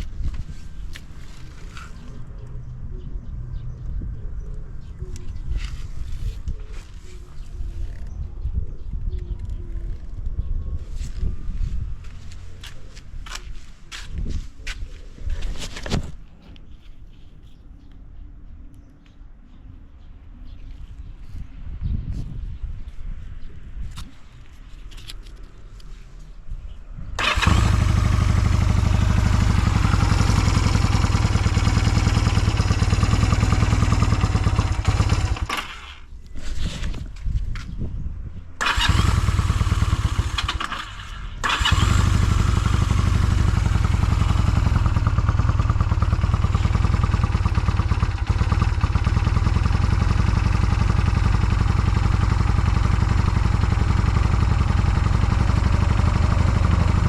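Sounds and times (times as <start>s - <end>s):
motorcycle engine idling: 27.2s - 36.1s, 38.6s - 57.0s.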